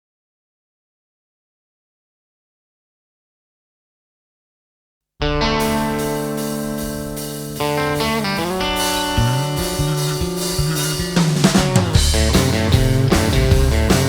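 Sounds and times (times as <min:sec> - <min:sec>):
bass line: 0:05.2 - 0:14.0
drums: 0:05.2 - 0:14.0
guitar chord: 0:05.2 - 0:14.0.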